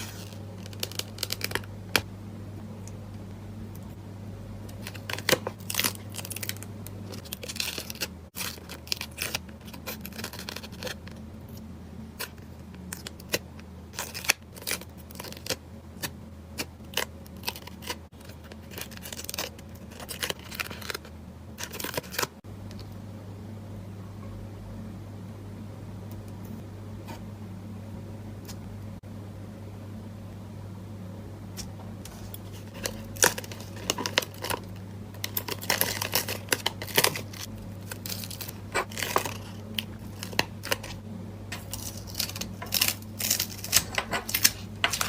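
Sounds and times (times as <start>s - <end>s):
low steady hum: 0.0s - 45.0s.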